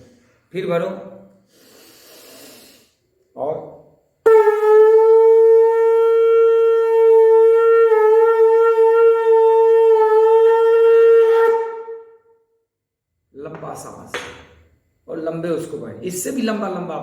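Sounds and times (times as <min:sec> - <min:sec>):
conch shell blown: 0:04.2 - 0:12.6.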